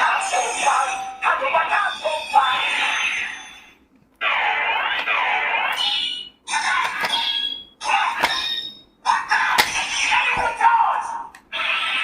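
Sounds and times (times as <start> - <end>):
toy belt electronic alarm tones: 0.2 - 3.8, 6.9 - 8.9.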